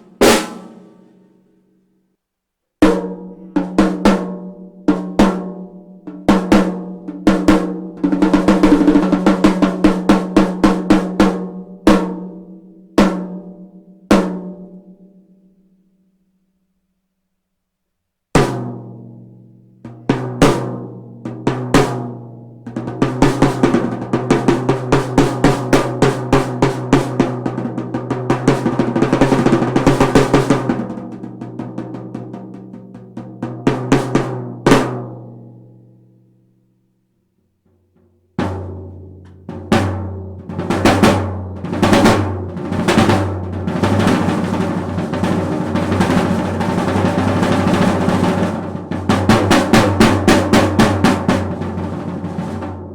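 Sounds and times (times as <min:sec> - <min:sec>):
drum kit rolls and fills: 0:00.0 - 0:01.3, 0:02.8 - 0:12.4, 0:19.9 - 0:35.2, 0:38.4 - 0:52.9.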